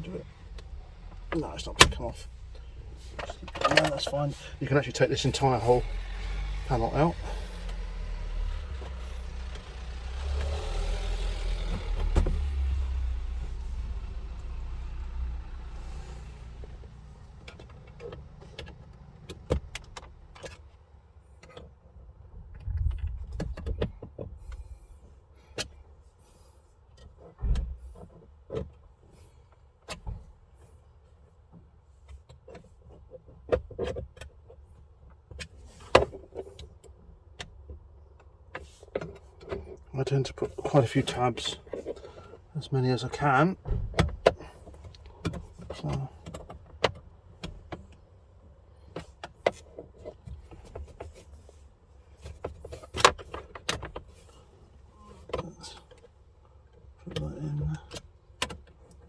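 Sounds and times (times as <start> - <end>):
car passing: 0.0 - 20.4.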